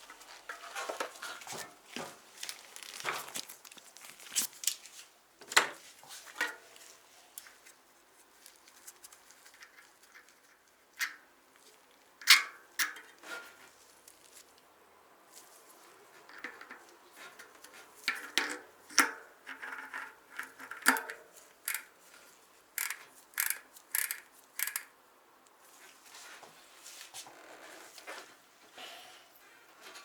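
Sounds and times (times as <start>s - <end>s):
metal parts clicking and tapping: 18.1s - 21.9s, 22.8s - 24.9s.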